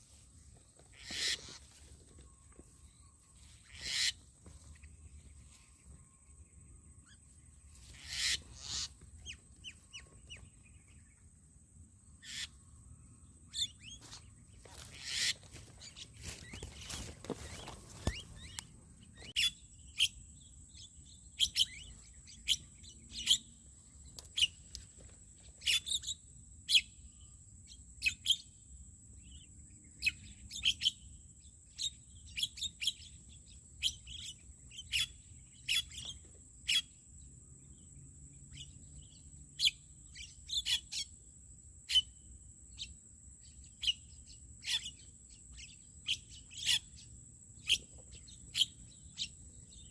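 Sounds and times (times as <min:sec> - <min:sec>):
birds chirping: 0:00.0 - 0:11.5, 0:12.2 - 0:28.4, 0:42.8 - 0:49.9.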